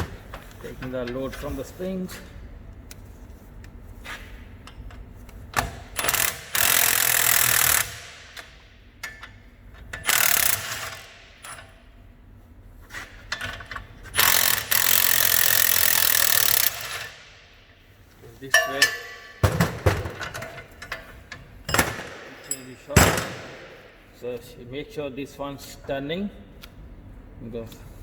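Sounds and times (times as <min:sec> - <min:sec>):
cordless impact wrench running: 0:06.0 - 0:08.5, 0:10.0 - 0:11.4, 0:14.2 - 0:17.4.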